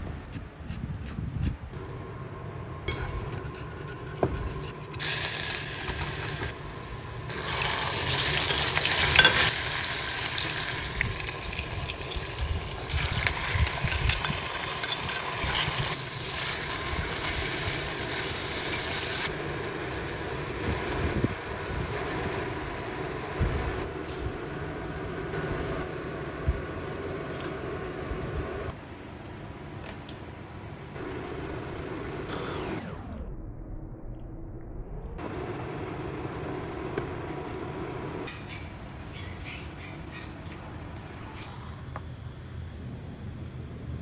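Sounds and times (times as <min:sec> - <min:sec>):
food sizzling in a pan: 0:01.8 - 0:24.0.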